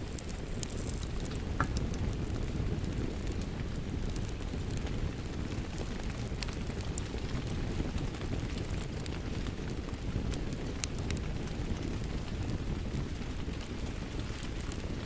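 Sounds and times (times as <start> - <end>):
fireplace crackling: 0.0 - 9.6.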